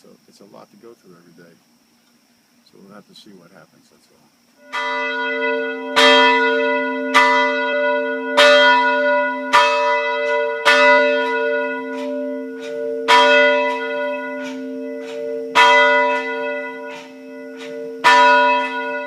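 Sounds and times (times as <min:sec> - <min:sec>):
church bells over loudspeakers: 0:04.6 - 0:19.0.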